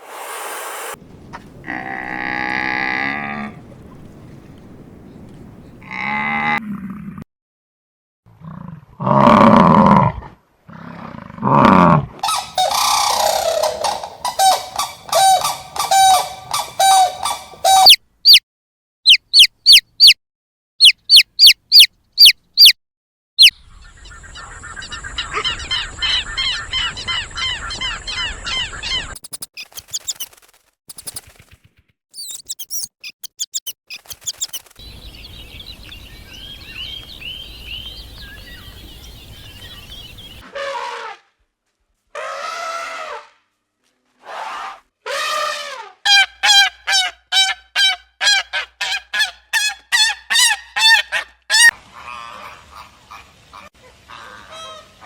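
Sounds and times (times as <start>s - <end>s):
birds chirping: 12.2s - 18.4s, 19.1s - 20.2s, 20.8s - 22.8s, 23.4s - 30.3s, 32.2s - 40.4s.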